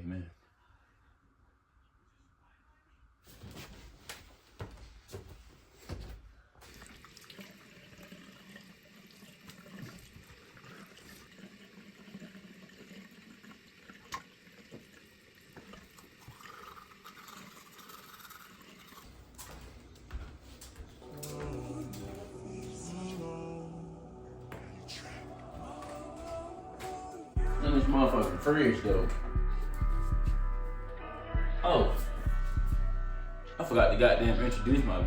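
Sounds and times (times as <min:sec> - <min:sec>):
water running from a tap: 0:06.6 - 0:19.0.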